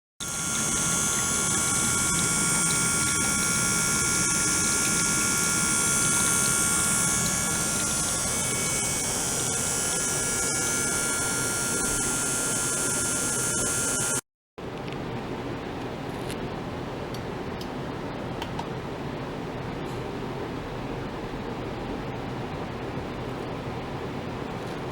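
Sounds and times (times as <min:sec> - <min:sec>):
water flowing through tank: 0:00.2 - 0:14.2
faint steady whines: 0:00.2 - 0:18.4
circulation pump hum: 0:00.2 - 0:24.9.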